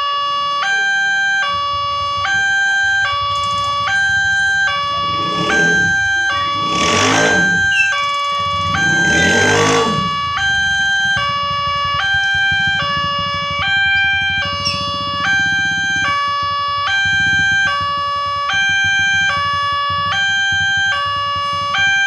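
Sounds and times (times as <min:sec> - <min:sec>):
two-tone electronic siren: 0:00.0 - 0:22.0
vehicles passing: 0:04.6 - 0:10.9.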